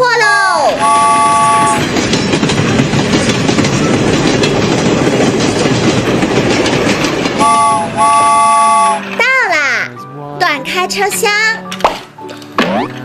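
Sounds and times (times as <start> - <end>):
train wheels clattering on rails: 0.0 - 9.6
three-note train horn: 0.8 - 1.9, 7.4 - 9.2.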